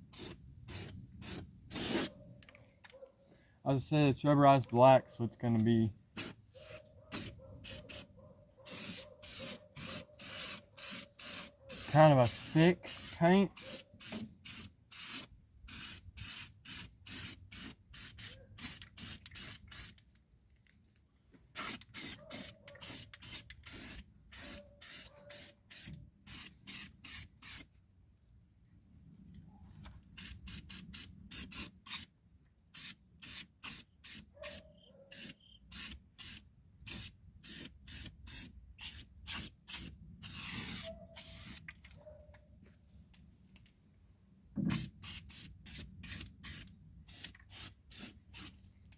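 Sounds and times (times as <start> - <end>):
aerosol can spraying: 0.1 - 2.1, 6.2 - 8.1, 8.7 - 20.0, 21.6 - 27.7, 30.2 - 32.1, 32.8 - 41.7, 44.7 - 48.6.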